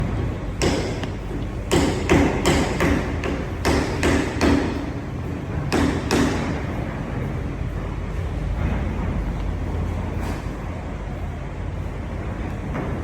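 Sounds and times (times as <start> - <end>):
steady low hum: 0.0 - 13.0
sharp ringing knocks: 1.7 - 4.8.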